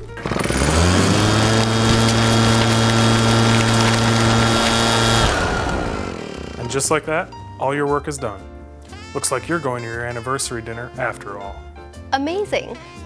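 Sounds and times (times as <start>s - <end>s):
motor hum: 0.0s - 7.3s.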